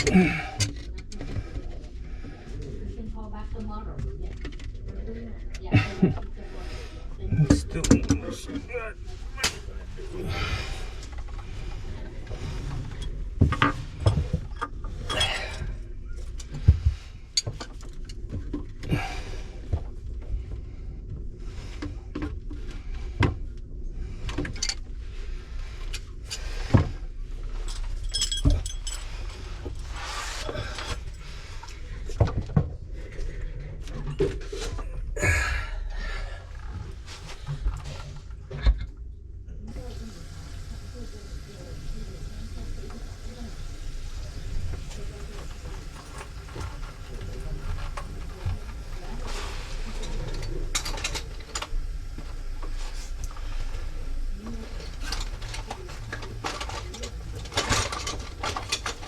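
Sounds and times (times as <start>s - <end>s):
metal tools clinking and rattling: 13.9s - 15.7s, 27.5s - 31.1s, 44.8s - 51.8s, 54.8s - 59.0s.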